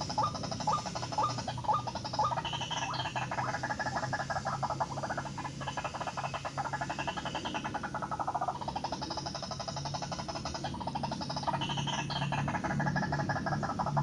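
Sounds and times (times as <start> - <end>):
waterhen calling: 0.0 - 8.8
low steady hum: 0.0 - 14.0.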